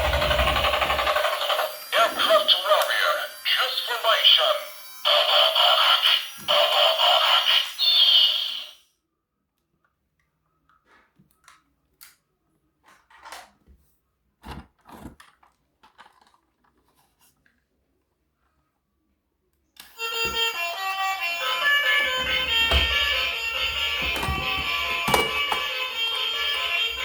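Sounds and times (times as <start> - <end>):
loud steady high tone: 0.0 - 8.8, 20.0 - 27.0
toy packaging rustling: 14.8 - 17.6.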